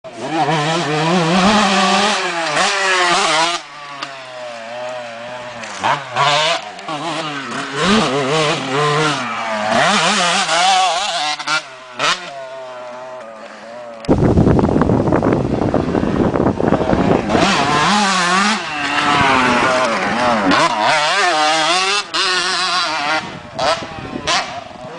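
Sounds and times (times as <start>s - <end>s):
loud rough rush of noise: 0.1s - 24.9s
two-stroke motorbike engine revving: 0.1s - 24.9s.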